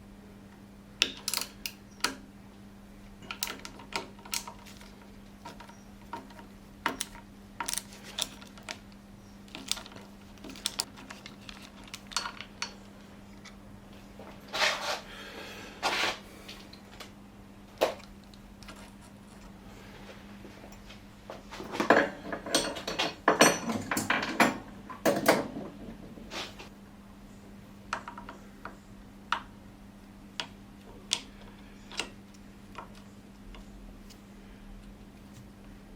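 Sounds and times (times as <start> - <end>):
steady low hum: 0.0 - 35.9
rattle: 3.2 - 13.5.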